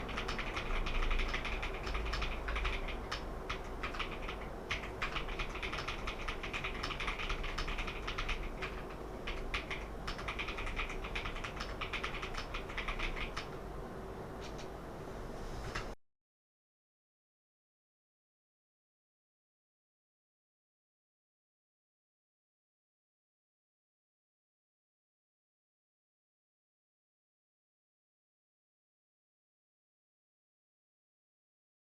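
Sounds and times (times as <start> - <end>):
mechanical keyboard keystroke clacks: 0.0 - 13.6.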